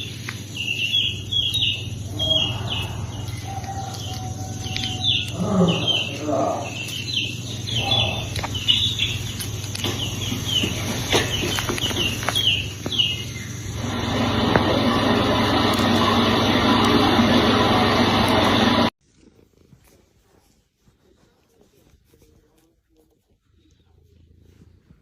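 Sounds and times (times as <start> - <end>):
small bird chirping: 0.0 - 13.7.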